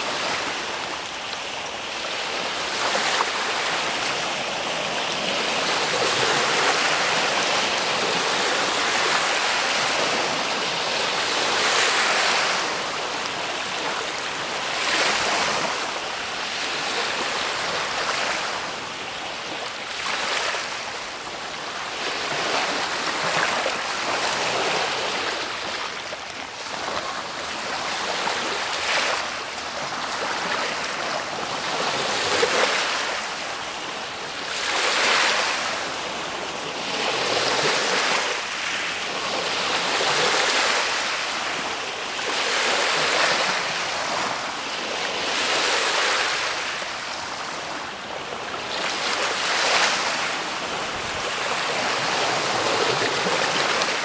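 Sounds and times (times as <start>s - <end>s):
ocean waves breaking: 34.4s - 54.0s.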